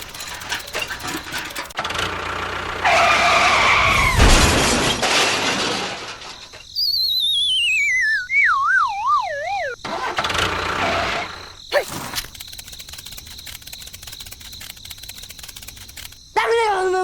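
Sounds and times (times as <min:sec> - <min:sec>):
noisy crash with squeal: 0:02.7 - 0:12.1
warbling whistle sliding down: 0:06.8 - 0:09.8.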